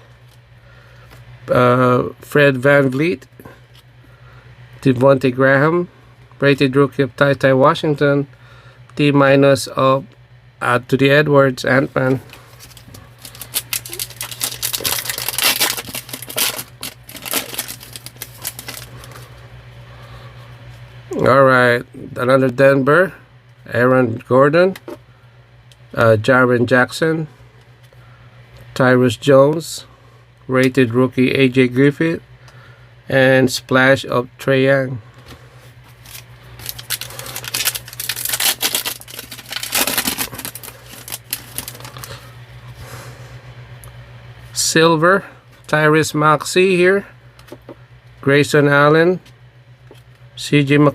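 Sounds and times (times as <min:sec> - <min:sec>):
steady low hum: 0:00.0 - 0:50.9
cards being handled: 0:12.0 - 0:19.2, 0:35.8 - 0:42.2
foil wrapper crinkling and tearing: 0:12.5 - 0:19.2, 0:36.0 - 0:42.3.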